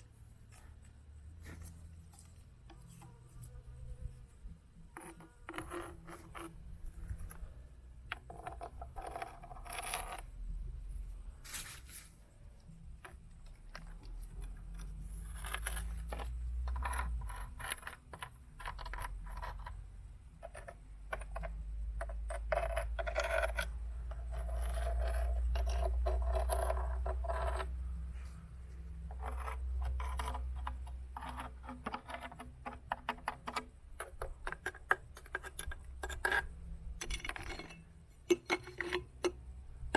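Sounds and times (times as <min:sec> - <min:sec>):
stones clattering and clinking: 0:05.0 - 0:07.5, 0:08.1 - 0:10.4, 0:13.0 - 0:19.8, 0:20.4 - 0:27.8, 0:29.1 - 0:39.9.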